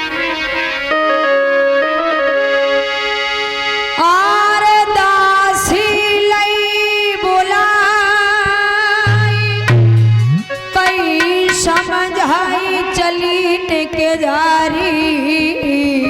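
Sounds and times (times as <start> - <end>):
reedy keyboard music: 0.0 - 5.6, 8.6 - 13.2.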